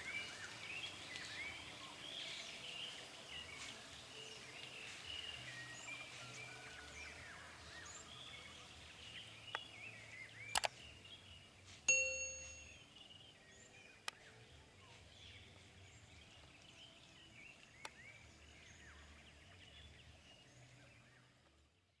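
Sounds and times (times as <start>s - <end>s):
birds chirping and singing: 0.0s - 11.8s, 12.5s - 21.5s
sharp clicks: 10.5s - 10.7s
ringing ding: 11.9s - 12.8s.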